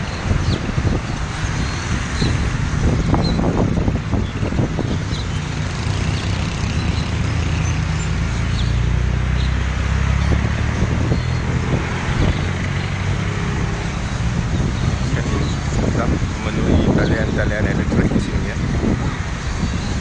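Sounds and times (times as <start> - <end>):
road traffic hum: 0.0 - 20.0
swallows chirping: 4.2 - 9.6.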